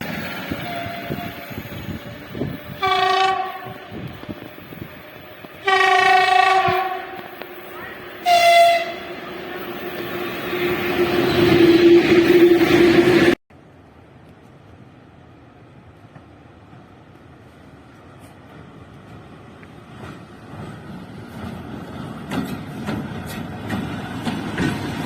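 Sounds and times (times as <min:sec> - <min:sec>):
approaching train noise: 0:00.0 - 0:25.0
locomotive horn blasts: 0:02.7 - 0:04.2, 0:05.6 - 0:07.4, 0:08.2 - 0:09.2.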